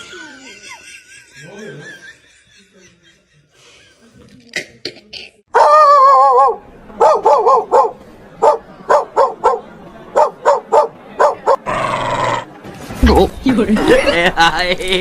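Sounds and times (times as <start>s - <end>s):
dog barking: 5.6s - 11.6s.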